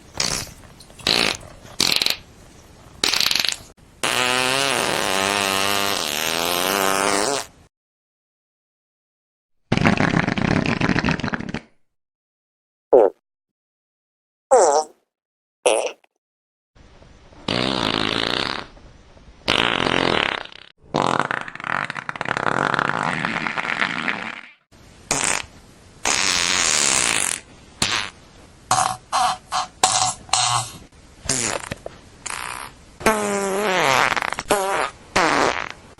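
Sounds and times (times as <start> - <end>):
fart sounds: 0.0 - 2.3, 3.0 - 7.6, 9.7 - 11.8, 13.0 - 13.2, 14.5 - 15.0, 15.7 - 16.1, 17.4 - 18.8, 19.5 - 35.9.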